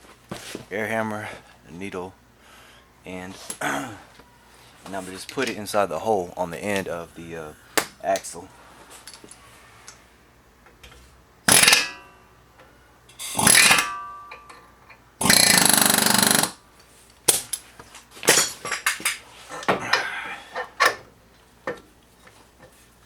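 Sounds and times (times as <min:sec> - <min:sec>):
air hammer rattling on metal: 0:11.5 - 0:12.0, 0:13.3 - 0:14.0, 0:15.2 - 0:16.6
metal ringing: 0:11.5 - 0:12.3, 0:13.1 - 0:14.6.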